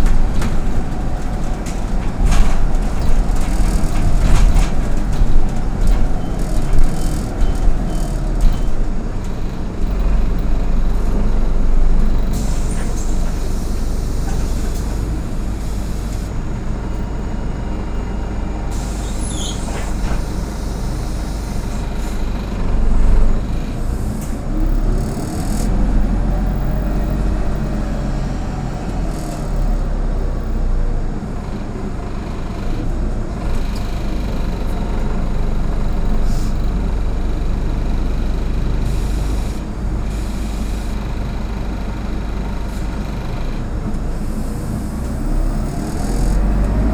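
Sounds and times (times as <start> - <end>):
bus engine droning: 0.0 - 46.9
air brakes hissing: 12.2 - 16.3, 18.1 - 22.2, 36.2 - 36.7.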